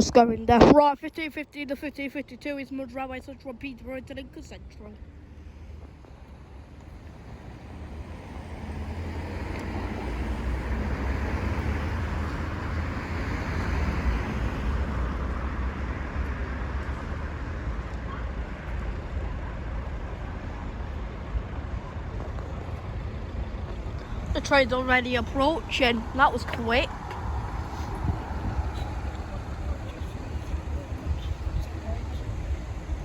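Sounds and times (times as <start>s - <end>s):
vehicle passing by: 5.0s - 19.4s, 21.8s - 33.0s
wind rumble on microphone: 5.8s - 33.0s.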